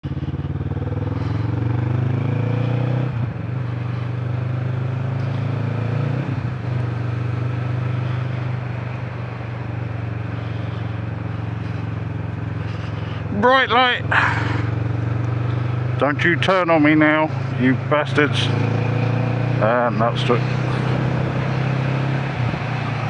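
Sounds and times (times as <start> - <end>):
motorcycle engine accelerating: 0.0 - 23.0.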